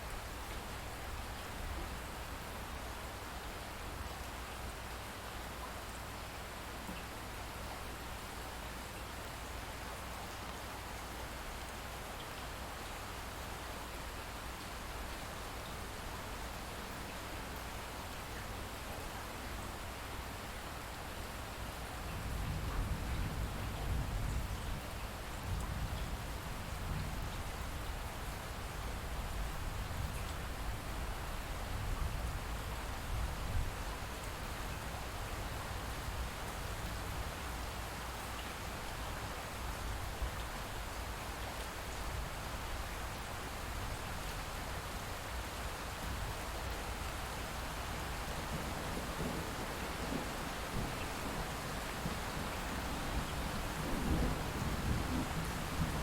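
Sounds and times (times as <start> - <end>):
light steady rain: 0.0 - 56.0
distant thunder rumbling: 48.4 - 56.0.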